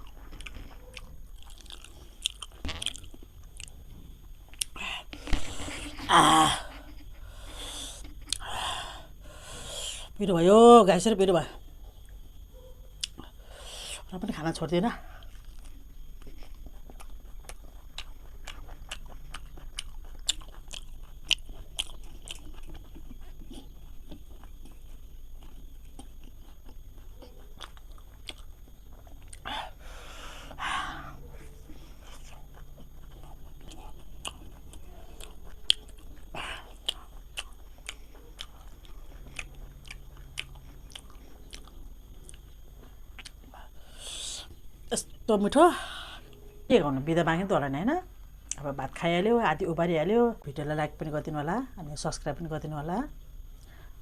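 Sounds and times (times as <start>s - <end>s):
person chewing wetly: 0.0s - 3.8s, 15.2s - 43.6s.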